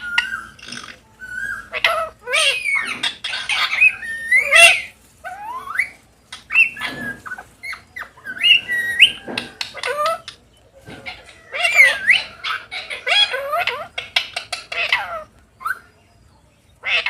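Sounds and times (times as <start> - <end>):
parrots squawking: 0.0 - 16.0, 16.8 - 17.0.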